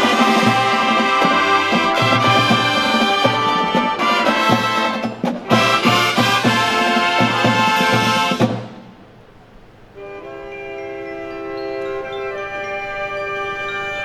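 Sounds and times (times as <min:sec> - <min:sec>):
marching band playing brass: 0:00.0 - 0:09.0.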